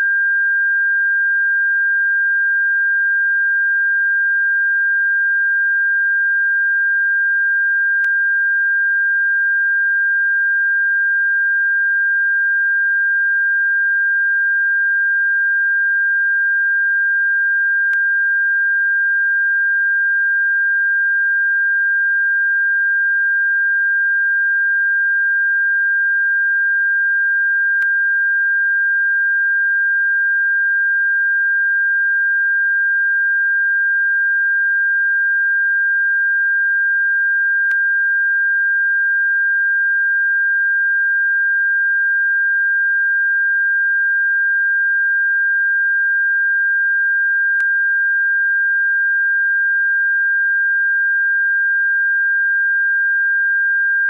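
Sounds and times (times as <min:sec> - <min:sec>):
steady pure sine tone: 0:00.0 - 0:54.0.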